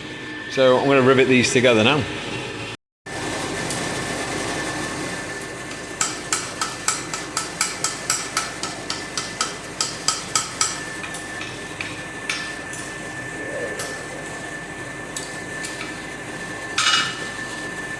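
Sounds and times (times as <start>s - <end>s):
hammer striking steel rivet: 6.0s - 12.6s.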